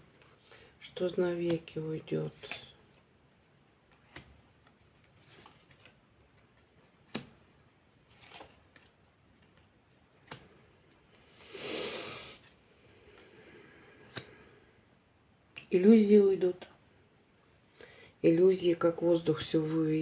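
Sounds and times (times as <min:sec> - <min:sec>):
cards being shuffled: 0:01.4 - 0:10.5.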